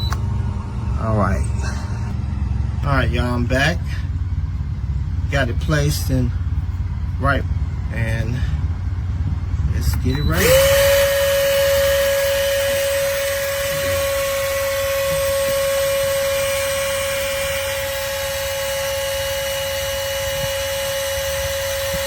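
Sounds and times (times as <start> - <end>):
hydraulic jack motor whining: 0.0 - 3.0, 3.6 - 22.0.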